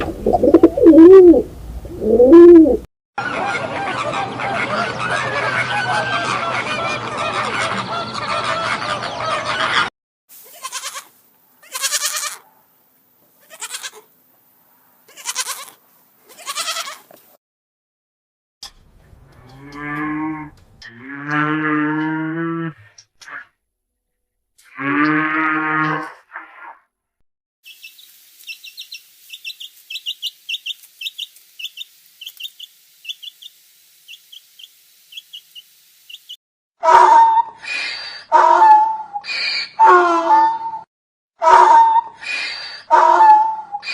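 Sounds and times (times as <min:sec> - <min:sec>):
goat bleating: 0:10.4 - 0:12.4, 0:13.4 - 0:14.1, 0:15.1 - 0:17.1
baby chicks peeping: 0:27.7 - 0:36.4
geese honking: 0:41.4 - 0:42.0.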